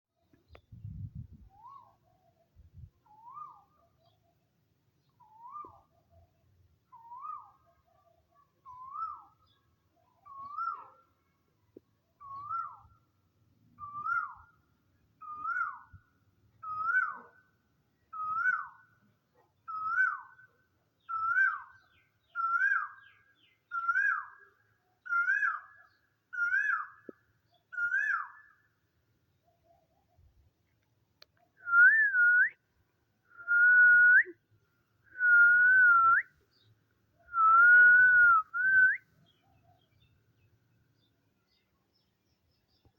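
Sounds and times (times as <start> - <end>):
whistled bird-like call: 1.5 - 4.4, 5.1 - 6.2, 6.9 - 8.0, 8.6 - 11.0, 12.2 - 13.0, 13.8 - 14.6, 15.2 - 16.0, 16.6 - 17.4, 18.1 - 19.0, 19.7 - 28.7, 31.6 - 32.7, 33.3 - 34.4, 35.1 - 40.1.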